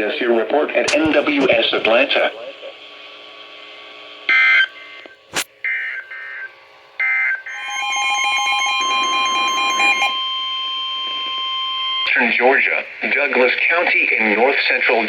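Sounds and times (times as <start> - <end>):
steady warning alarm tone: 5.7 - 13.6.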